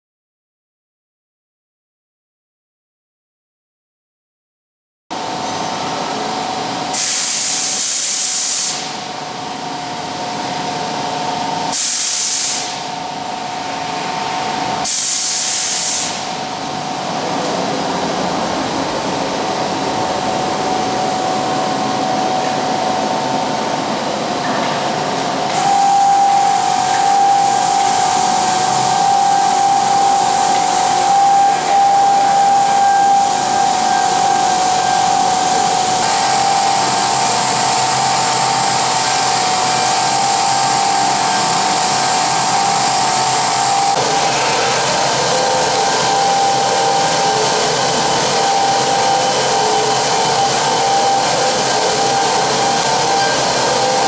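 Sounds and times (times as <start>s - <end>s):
motor whine: 25.4s - 54.0s.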